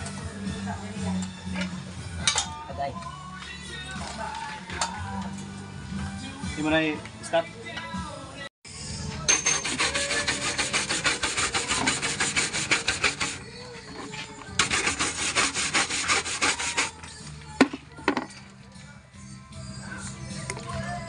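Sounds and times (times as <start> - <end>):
fast rasping strokes: 9.5 - 13.4, 14.6 - 17.0.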